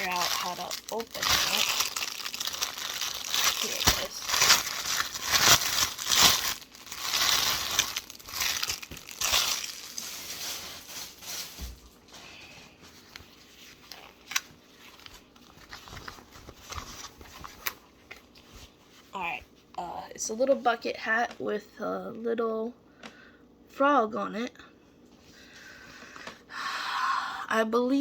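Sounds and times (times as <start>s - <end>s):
packaging crinkling and rustling: 0.0s - 18.8s.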